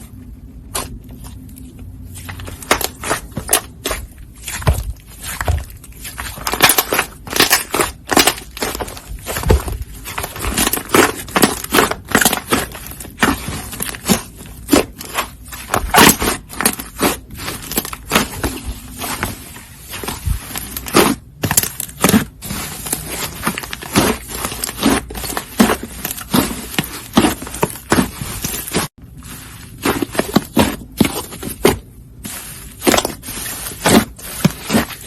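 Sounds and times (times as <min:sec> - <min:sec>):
slime crackling and popping: 0:02.2 - 0:28.9.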